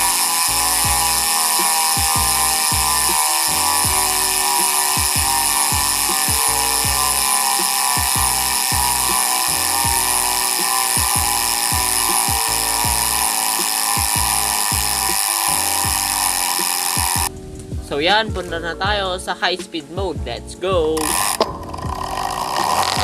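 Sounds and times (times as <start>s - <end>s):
bike hub ratchet buzzing: 0.0s - 17.3s, 21.0s - 23.0s.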